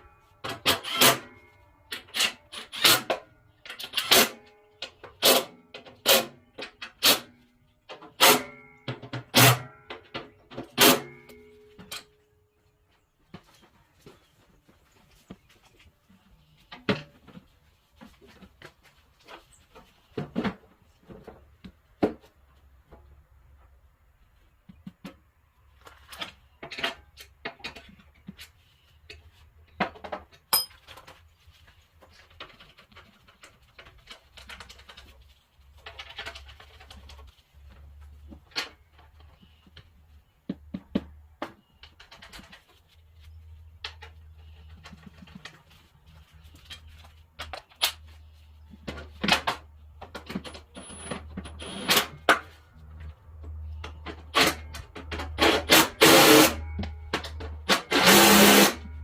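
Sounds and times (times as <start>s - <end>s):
hand tools and metal parts clicking: 0.4s - 12.3s, 25.8s - 31.3s, 48.8s - 59.0s.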